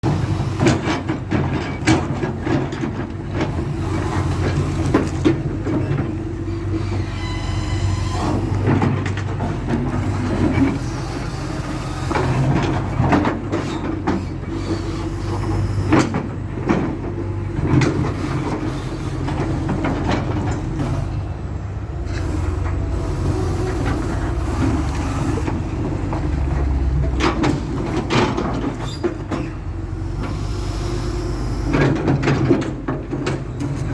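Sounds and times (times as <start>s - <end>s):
excavator engine running: 0.0s - 33.9s
high metallic squeal: 6.8s - 8.5s.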